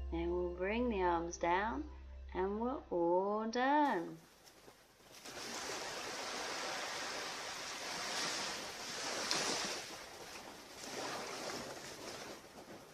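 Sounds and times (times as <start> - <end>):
ocean surf washing onto beach: 5.3 - 12.9.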